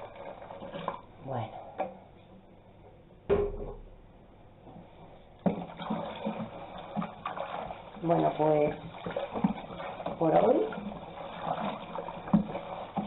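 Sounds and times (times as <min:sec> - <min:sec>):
hard thump: 0:03.3 - 0:04.0.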